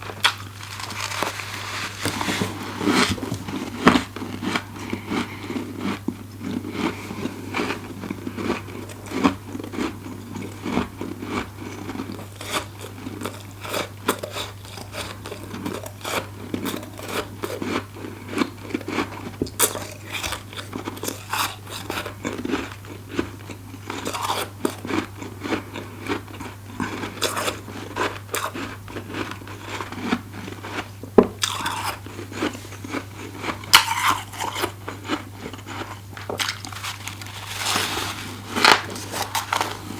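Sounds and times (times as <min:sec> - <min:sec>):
crunching and chewing frost: 0:00.0 - 0:39.9.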